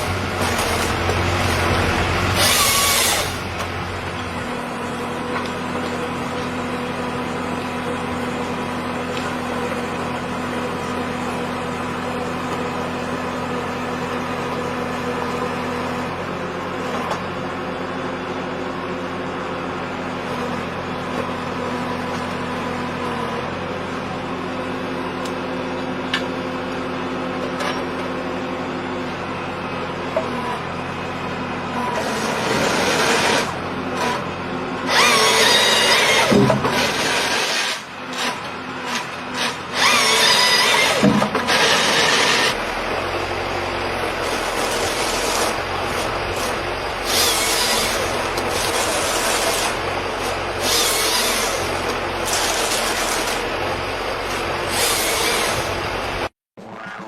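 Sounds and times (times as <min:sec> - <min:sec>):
power tool motor humming: 0:00.0 - 0:03.8, 0:34.9 - 0:42.7, 0:44.2 - 0:56.2.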